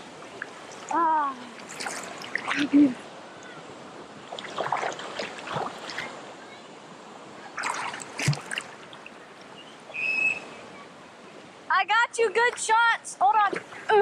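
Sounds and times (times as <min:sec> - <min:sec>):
sharp water splashes: 0:00.3 - 0:02.9, 0:04.3 - 0:06.2, 0:07.5 - 0:09.2.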